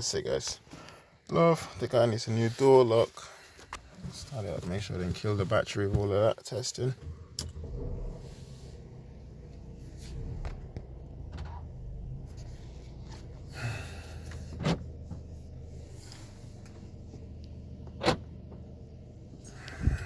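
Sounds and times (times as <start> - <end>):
car engine idling: 7.0 - 20.0.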